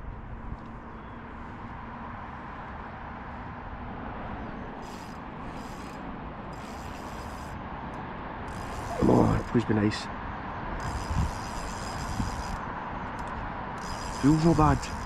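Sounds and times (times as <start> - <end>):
fishing reel whirring: 4.8 - 7.6, 8.4 - 9.6, 10.8 - 15.0.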